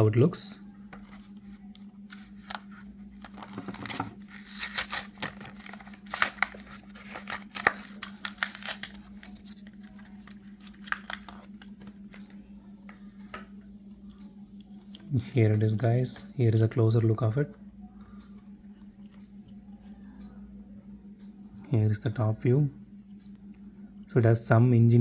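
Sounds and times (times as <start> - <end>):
steady low hum: 0.0 - 25.0
blister package being torn open: 3.3 - 11.5.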